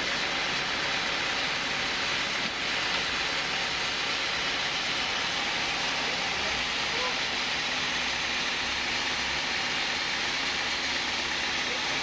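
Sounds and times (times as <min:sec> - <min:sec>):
sawmill saw running: 0:00.0 - 0:12.0.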